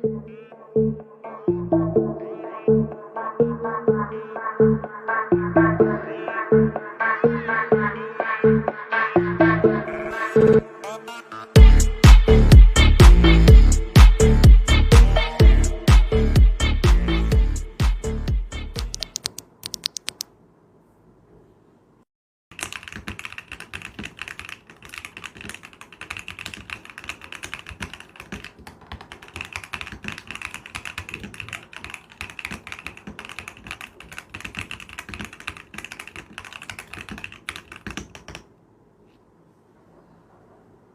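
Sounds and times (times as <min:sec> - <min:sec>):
mechanical keyboard typing: 0:18.9 - 0:20.3, 0:22.6 - 0:38.5.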